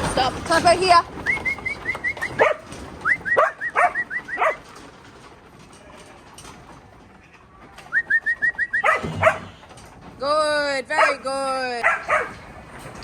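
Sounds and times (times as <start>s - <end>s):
dog barking high yaps: 2.3s - 4.7s, 8.8s - 9.6s, 11.8s - 12.4s.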